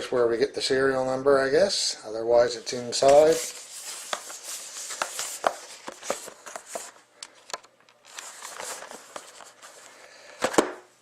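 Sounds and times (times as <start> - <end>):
cardboard and wrapper rustling: 2.9 - 7.1, 8.0 - 10.7.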